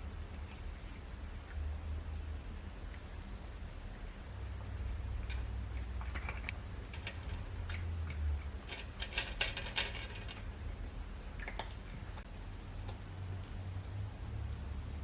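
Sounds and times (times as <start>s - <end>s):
low steady hum: 0.0s - 15.0s
objects clicking and rustling: 5.2s - 10.6s.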